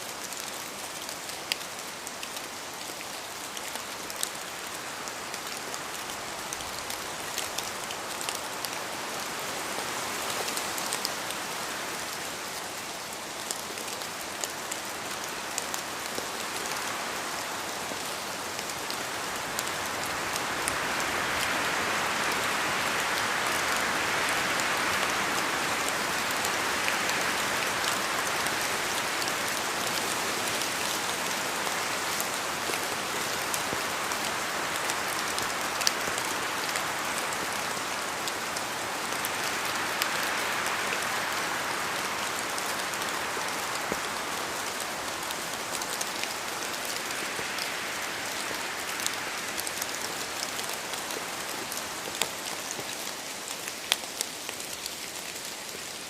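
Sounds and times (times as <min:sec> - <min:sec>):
rain falling in forest: 0:00.0 - 0:56.0
wind through branches: 0:00.0 - 0:56.0.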